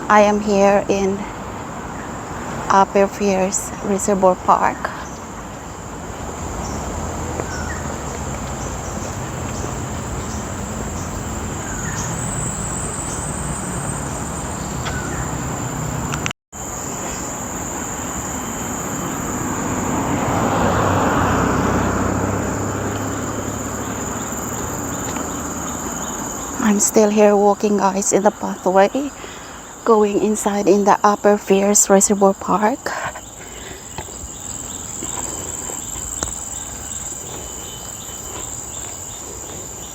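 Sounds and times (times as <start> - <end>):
insects shrilling: 16.6 - 39.9.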